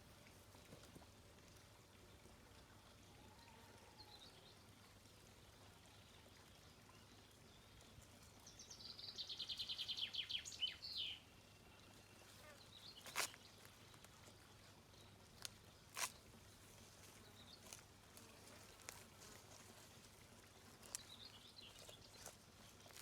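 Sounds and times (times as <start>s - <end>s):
faint outdoor background: 0.0s - 23.0s
songbird high-pitched trill: 8.8s - 11.3s.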